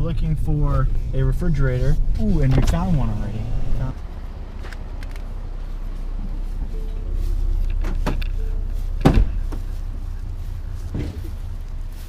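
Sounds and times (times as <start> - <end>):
truck engine rumbling: 0.0 - 12.0
loud thump: 9.0 - 9.4, 10.9 - 11.3.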